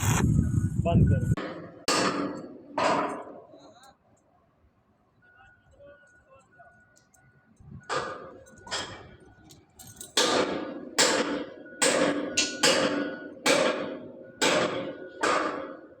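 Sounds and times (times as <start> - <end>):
hammer striking steel: 1.4 - 3.4, 7.9 - 9.1, 10.1 - 16.0.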